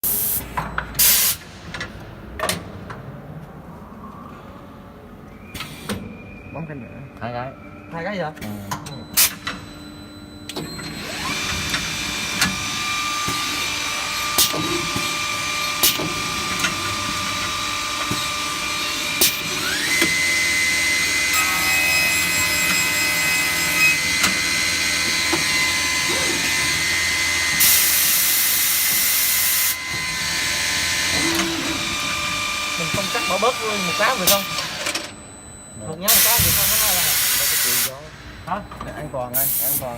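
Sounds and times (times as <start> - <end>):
spindle motors whining: 5.2 - 39.9
loud hiss: 36.1 - 37.9, 39.4 - 39.9.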